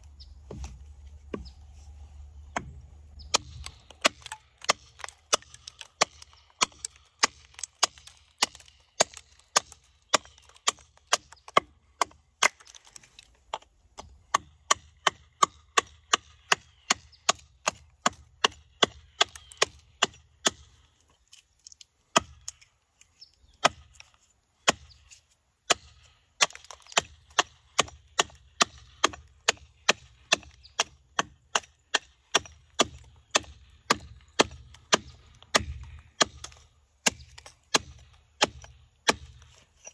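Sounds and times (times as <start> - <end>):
axe chopping wood: 0.4 - 1.6, 2.4 - 20.7, 22.1 - 22.6, 23.6 - 25.0, 25.7 - 39.9.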